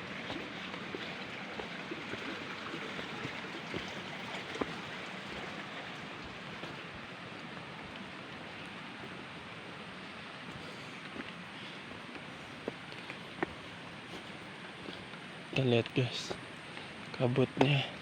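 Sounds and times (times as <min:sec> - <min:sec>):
faint ticks and taps: 0:10.5 - 0:18.0.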